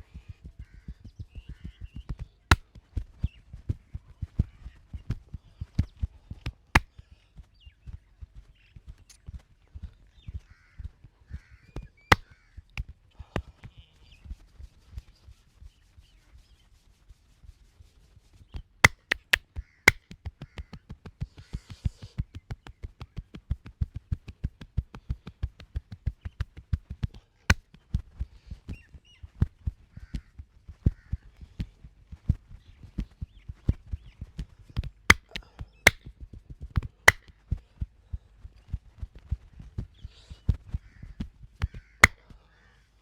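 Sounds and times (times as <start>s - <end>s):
sharp cracks: 18.8s - 20.0s, 35.1s - 36.0s
hands thumping on body: 18.9s - 20.0s, 35.1s - 36.0s.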